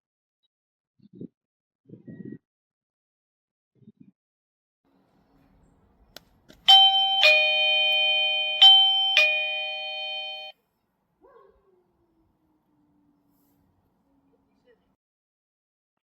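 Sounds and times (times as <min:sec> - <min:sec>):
doorbell ding-dong chime: 0:06.7 - 0:10.5.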